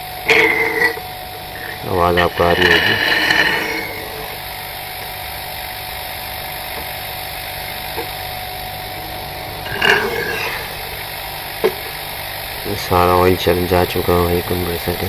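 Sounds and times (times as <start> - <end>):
refrigerator compressor humming: 0.0 - 15.0
rushing suction noise: 0.3 - 5.1.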